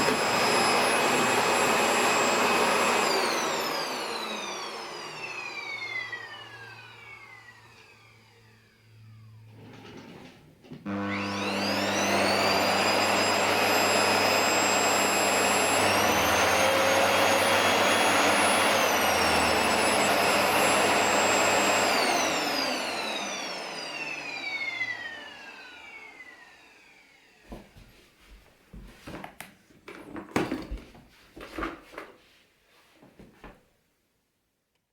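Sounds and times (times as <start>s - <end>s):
vacuum cleaner motor whining: 0.0s - 27.8s.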